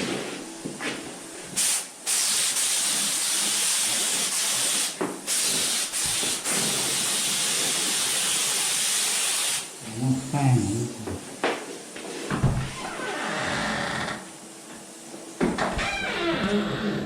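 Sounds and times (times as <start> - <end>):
spray gun hissing: 1.6 - 9.8.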